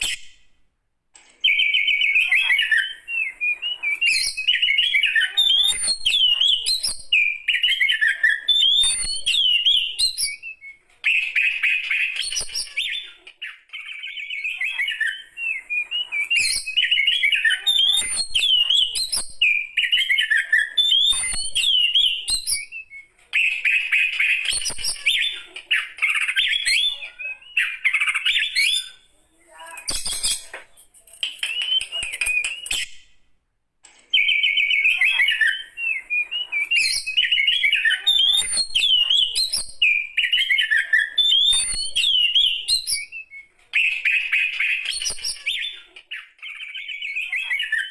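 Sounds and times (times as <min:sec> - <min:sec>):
bird singing whistled phrases: 0:01.4 - 0:30.5, 0:31.2 - 0:33.1, 0:34.1 - 0:47.9.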